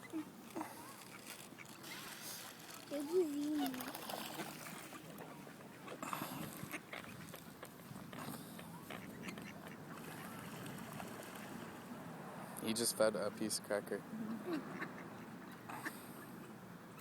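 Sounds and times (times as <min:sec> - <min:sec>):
ducks quacking: 0:14.3 - 0:17.0.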